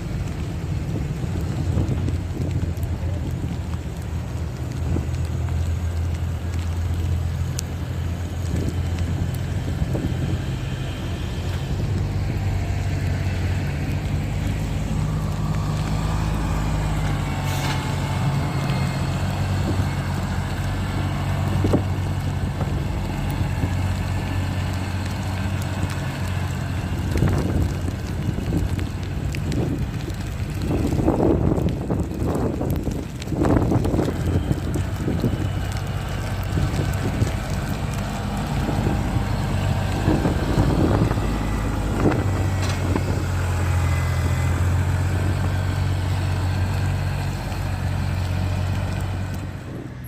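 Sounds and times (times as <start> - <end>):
large vehicle engine running: 0.0 - 50.0.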